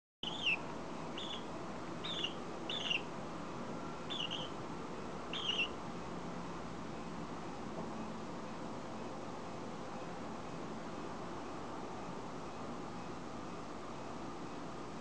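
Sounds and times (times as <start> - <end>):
budgerigar chirping: 0.2 - 3.1, 4.1 - 4.5, 5.3 - 5.7.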